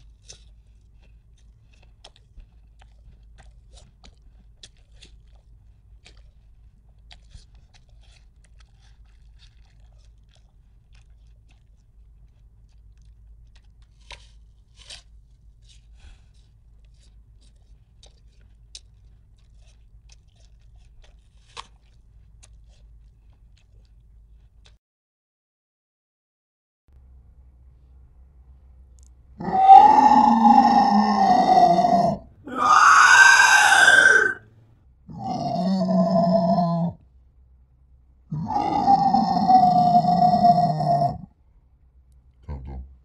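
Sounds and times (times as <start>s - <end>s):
crunching and crackling: 0.0s - 24.8s, 29.0s - 34.7s
low steady hum: 27.0s - 29.4s.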